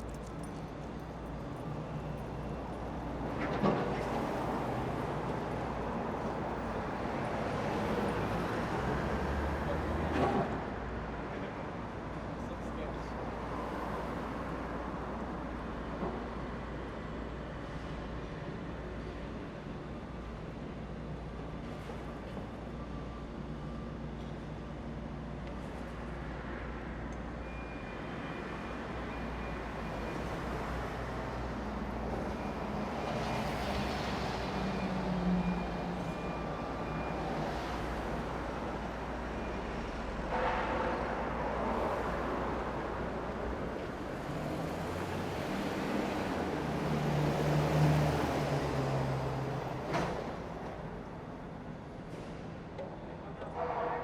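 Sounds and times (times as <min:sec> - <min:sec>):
vehicles passing: 0:36.6 - 0:51.3.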